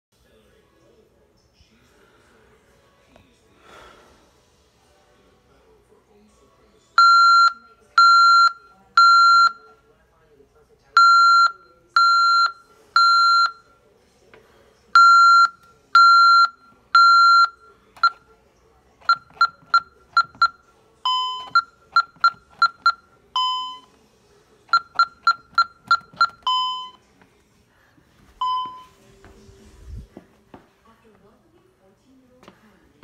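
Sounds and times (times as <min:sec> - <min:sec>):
quick key-press beeps: 0:19.0 - 0:23.7, 0:24.7 - 0:26.9
alarm keypad beeping: 0:19.0 - 0:23.9, 0:24.7 - 0:27.0.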